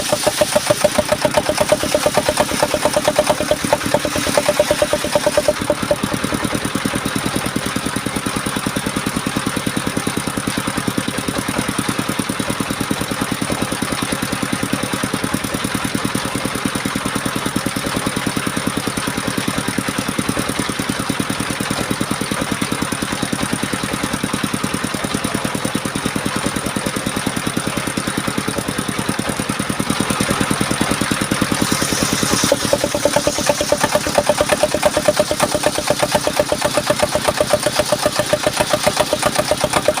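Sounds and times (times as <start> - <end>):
sawmill engine running: 0.0 - 40.0.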